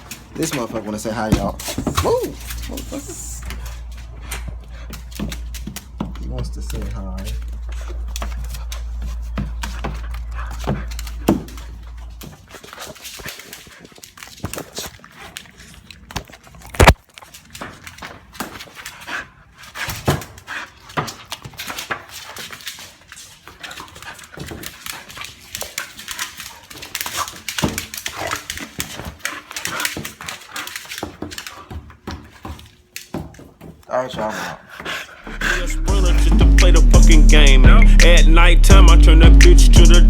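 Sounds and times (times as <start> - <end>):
rustling and handling noise: 0.0 - 14.9
dog making small vocal noises: 1.6 - 12.4.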